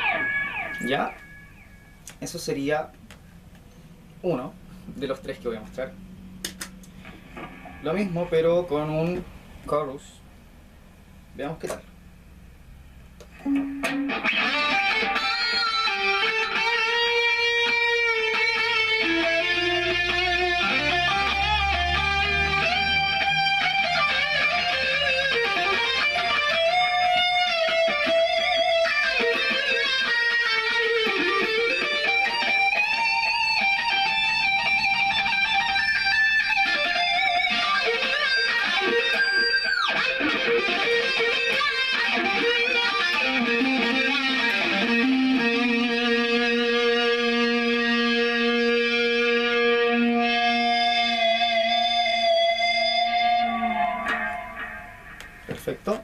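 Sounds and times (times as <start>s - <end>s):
electric guitar lead melody: 0.0s - 2.1s, 13.3s - 55.5s.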